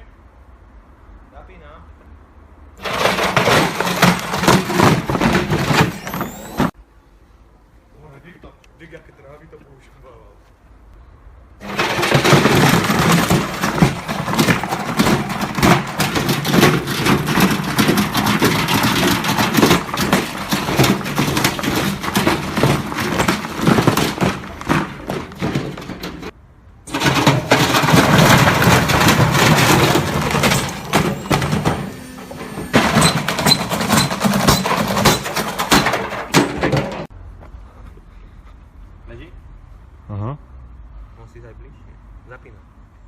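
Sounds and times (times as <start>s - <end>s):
heavy rattling and knocking: 2.8s - 6.7s, 11.6s - 37.1s.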